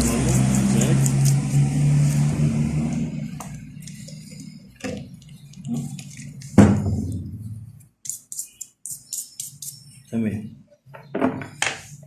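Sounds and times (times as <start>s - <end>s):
low motor hum: 0.0s - 5.3s.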